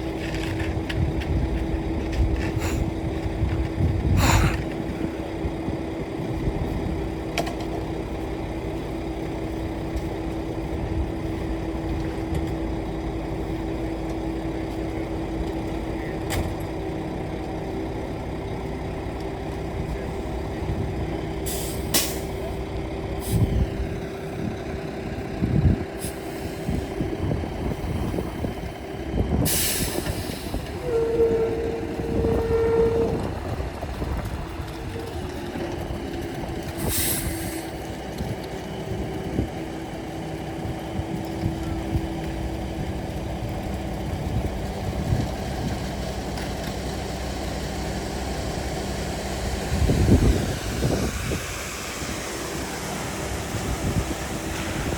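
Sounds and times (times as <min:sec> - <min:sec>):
diesel engine running: 0:00.0 - 0:54.9
held tone: 0:30.8 - 0:33.3.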